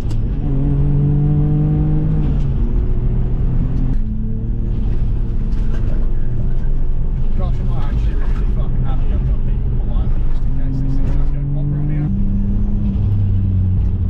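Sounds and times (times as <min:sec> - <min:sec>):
car engine pulling: 0:00.0 - 0:14.0.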